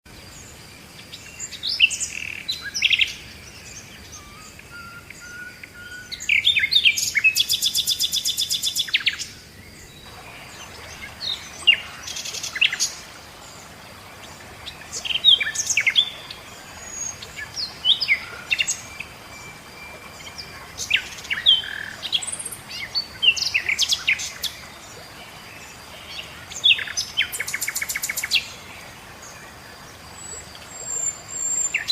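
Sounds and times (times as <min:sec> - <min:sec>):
faint outdoor background: 0:00.0 - 0:31.9
songbirds chirping and whistling: 0:01.0 - 0:31.9.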